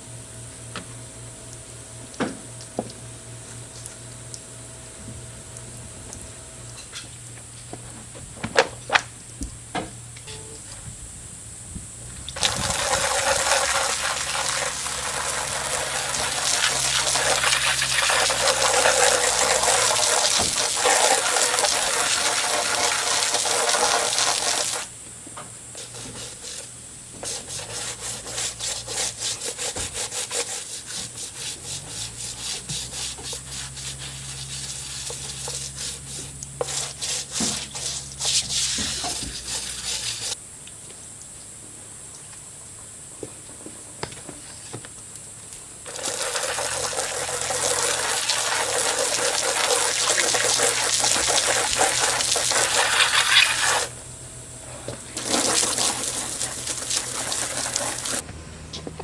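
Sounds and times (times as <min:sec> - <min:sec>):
water spraying on rubber mats: 0:12.3 - 0:25.0, 0:25.8 - 0:40.4, 0:45.5 - 0:54.1, 0:54.9 - 0:58.2
stiff brush scrubbing mats: 0:12.4 - 0:24.9, 0:25.8 - 0:40.4, 0:45.9 - 0:54.0, 0:54.7 - 0:59.0.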